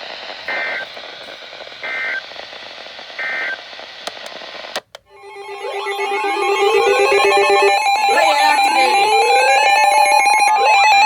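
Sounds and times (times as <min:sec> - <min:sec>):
radio hiss: 0:00.0 - 0:05.0
sharp clicks: 0:00.4 - 0:05.1
data tone bursts: 0:05.1 - 0:11.0.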